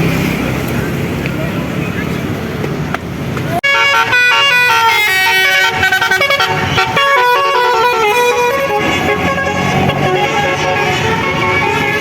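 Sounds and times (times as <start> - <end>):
musical bus air horn: 3.6 - 12.0.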